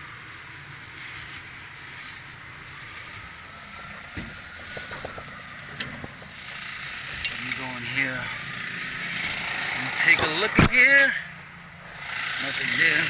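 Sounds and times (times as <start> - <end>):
light metallic clicks and rattles: 4.0 - 7.8.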